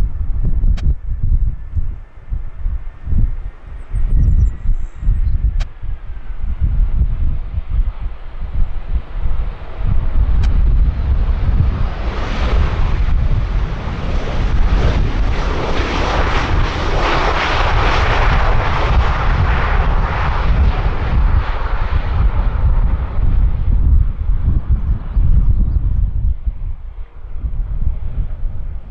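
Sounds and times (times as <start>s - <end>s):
jet airliner flying past: 0.0s - 28.9s
wind buffeting microphone: 0.0s - 28.9s.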